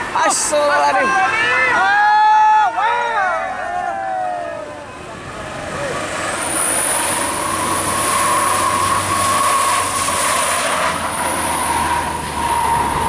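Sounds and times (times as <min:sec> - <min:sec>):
bus engine: 0:00.0 - 0:13.0
high-pitched whine: 0:04.8 - 0:13.0.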